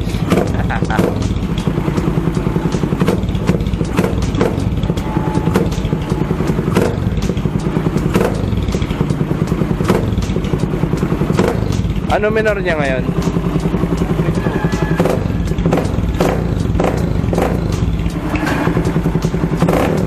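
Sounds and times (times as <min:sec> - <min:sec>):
motorcycle engine idling: 0:00.0 - 0:20.0
sharp knocks or clicks: 0:00.2 - 0:01.7, 0:03.0 - 0:07.4, 0:08.1 - 0:08.8, 0:15.0 - 0:18.8.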